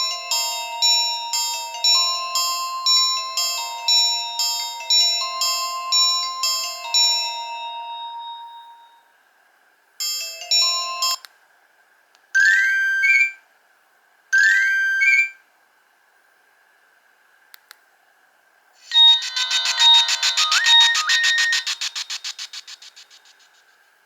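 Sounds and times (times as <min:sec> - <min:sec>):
phone chiming tone: 0:14.4 - 0:15.4, 0:18.8 - 0:22.1
rising electronic alert: 0:18.8 - 0:23.4
short electronic melody: 0:18.8 - 0:23.4.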